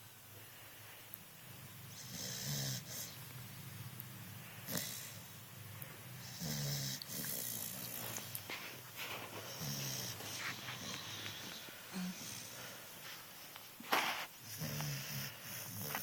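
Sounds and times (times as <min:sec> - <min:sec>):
snoring: 0:01.9 - 0:03.2, 0:04.6 - 0:05.2, 0:06.2 - 0:08.4, 0:09.5 - 0:12.6, 0:14.4 - 0:16.0.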